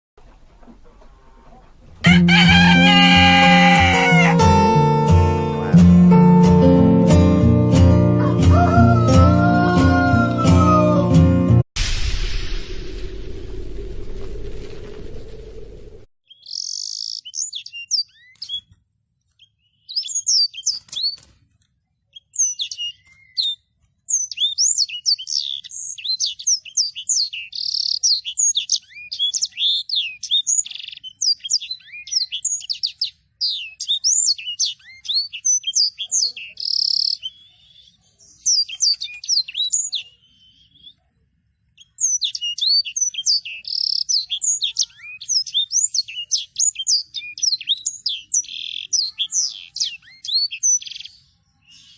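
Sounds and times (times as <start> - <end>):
songbird singing rapid trills: 16.3 - 18.7, 19.4 - 21.2, 22.1 - 41.0, 41.7 - 51.9.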